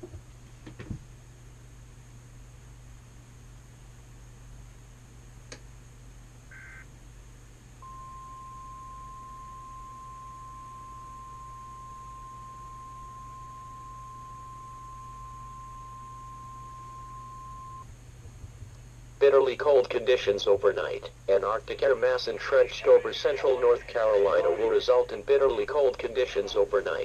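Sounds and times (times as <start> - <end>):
low hiss and hum: 0.0 - 27.0
click: 5.5 - 5.7
two-pitch data warble: 7.8 - 17.8.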